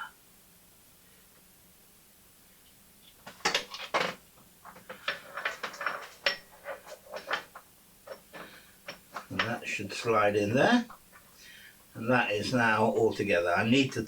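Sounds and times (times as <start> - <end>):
metal parts clicking and clinking: 3.2 - 11.3.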